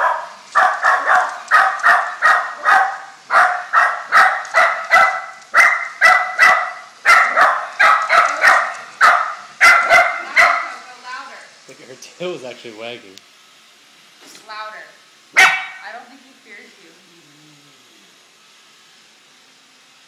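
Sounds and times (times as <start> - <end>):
dog barking rapidly: 0.0 - 10.8, 15.3 - 15.9.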